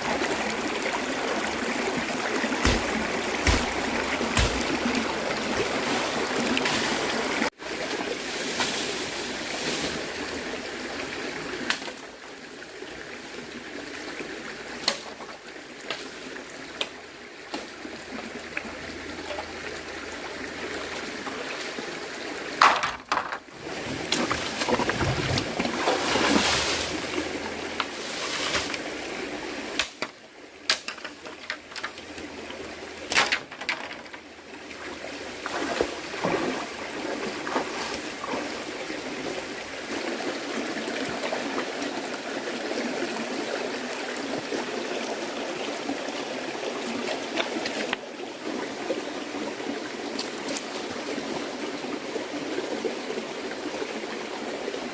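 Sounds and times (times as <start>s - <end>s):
stream flowing: 0.0s - 54.9s
sharp knocks: 2.6s - 3.8s.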